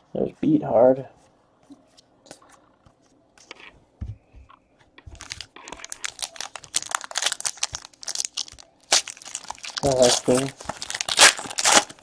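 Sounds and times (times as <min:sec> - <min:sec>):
foil wrapper crinkling and tearing: 0:05.2 - 0:12.0.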